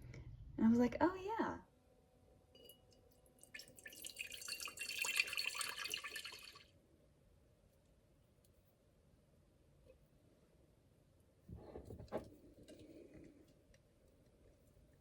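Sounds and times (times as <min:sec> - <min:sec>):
water running from tap: 0:03.6 - 0:06.6.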